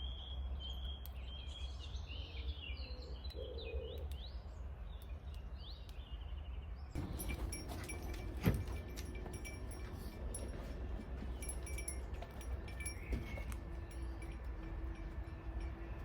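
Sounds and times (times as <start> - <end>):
low steady rumble: 7.0 - 16.0.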